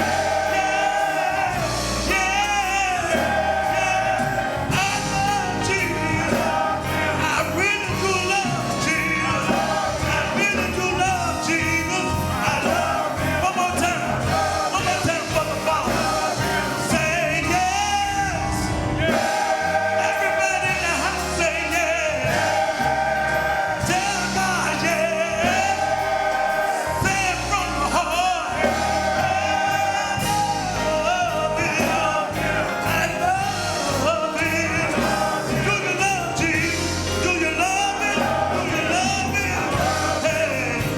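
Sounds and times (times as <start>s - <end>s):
choir singing gospel: 0.0s - 40.9s
instrumental accompaniment: 0.0s - 40.9s.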